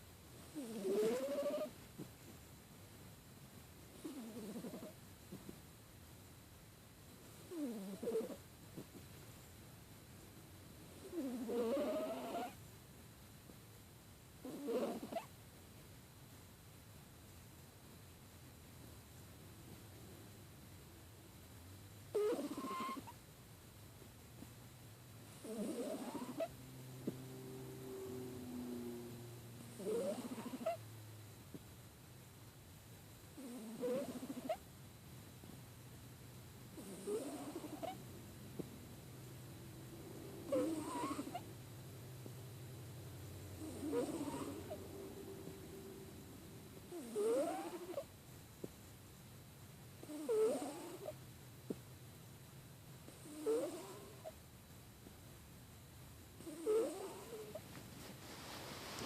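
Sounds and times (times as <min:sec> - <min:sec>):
pet snoring through stuffy nose: 0:00.4 - 0:02.1, 0:03.9 - 0:05.0, 0:07.4 - 0:08.9, 0:10.9 - 0:12.6, 0:14.4 - 0:15.3, 0:22.1 - 0:23.2, 0:25.3 - 0:30.8, 0:33.4 - 0:34.6, 0:36.7 - 0:38.0, 0:39.7 - 0:41.5, 0:43.3 - 0:48.1, 0:50.0 - 0:51.2, 0:53.1 - 0:54.4, 0:56.4 - 0:57.7.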